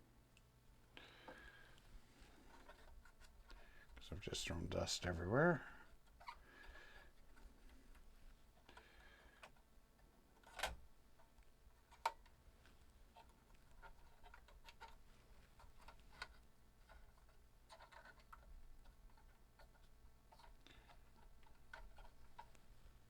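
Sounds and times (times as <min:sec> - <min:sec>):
faint scratching: 0:02.0 - 0:08.3.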